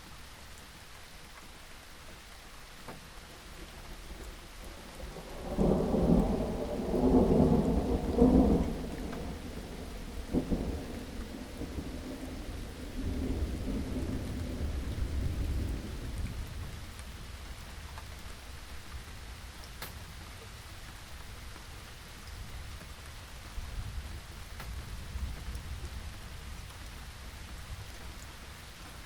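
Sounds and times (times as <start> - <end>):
steady rain: 0.0 - 29.0
rolling thunder: 4.6 - 16.9
sharp thunder crack: 5.4 - 15.8.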